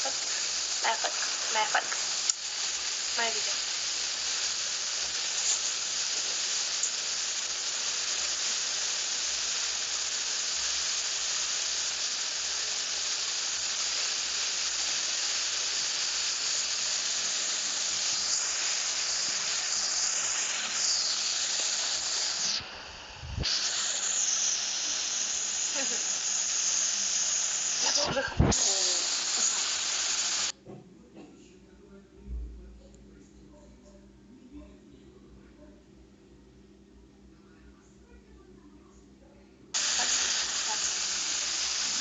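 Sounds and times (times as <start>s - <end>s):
steady rushing hiss: 0.0s - 30.6s, 39.7s - 42.0s.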